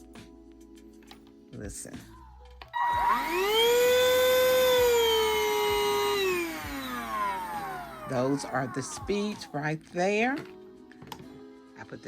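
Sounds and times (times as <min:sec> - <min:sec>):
handheld vacuum motor whine: 0:02.8 - 0:09.5.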